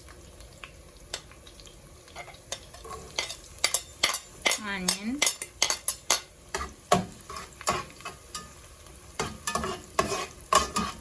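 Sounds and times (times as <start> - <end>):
food sizzling: 0.0 - 11.0
utensil scraping and knocking pan: 2.2 - 8.6, 9.2 - 11.0.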